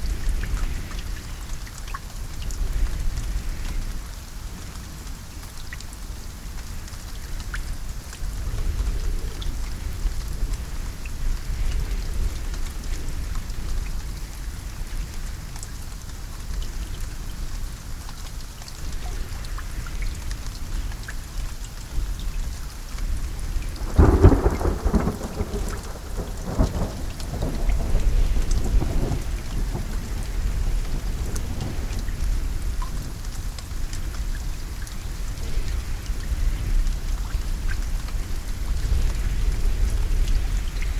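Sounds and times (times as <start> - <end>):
steady rain falling: 0.0 - 40.9
thunder clap: 23.8 - 32.3.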